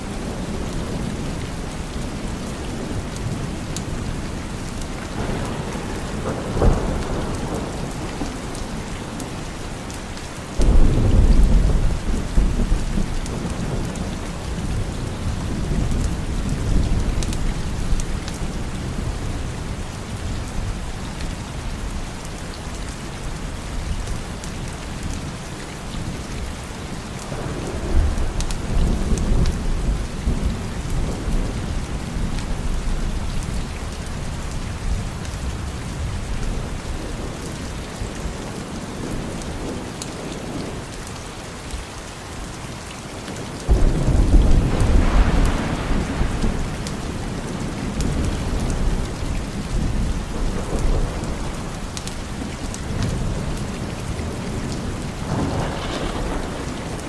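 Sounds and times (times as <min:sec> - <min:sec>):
thunder rumbling: 0:00.0 - 0:09.5, 0:10.6 - 0:19.5, 0:27.3 - 0:37.8, 0:43.7 - 0:57.0
rain falling: 0:00.0 - 0:57.0.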